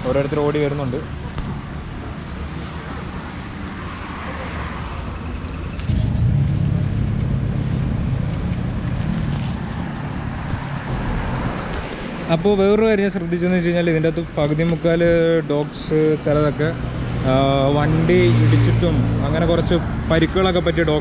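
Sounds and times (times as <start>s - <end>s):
vehicle engine rumbling: 5.0s - 14.9s.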